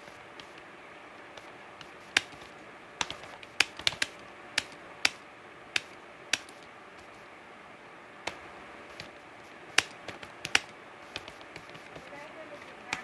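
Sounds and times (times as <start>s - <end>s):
faint steady hiss: 0.0s - 13.0s
keyboard keys clicking: 1.4s - 5.2s, 9.8s - 13.0s.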